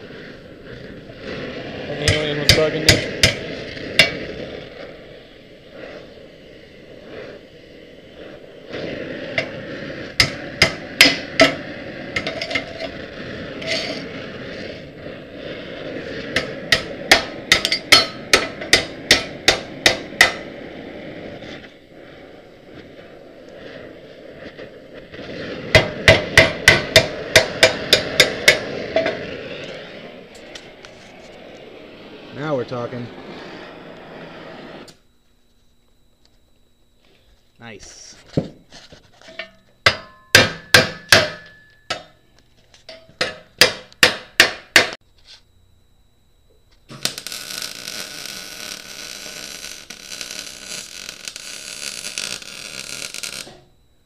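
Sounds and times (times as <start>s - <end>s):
steady hiss: 0.0s - 54.0s
hammer striking steel frame: 16.7s - 20.4s, 25.7s - 28.6s, 39.4s - 42.2s, 42.9s - 45.0s.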